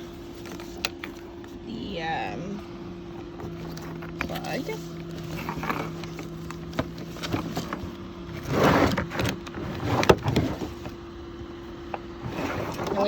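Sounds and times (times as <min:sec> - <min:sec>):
steady low hum: 0:00.0 - 0:13.0
cable scraping while pulled out: 0:03.4 - 0:11.0, 0:12.2 - 0:13.0.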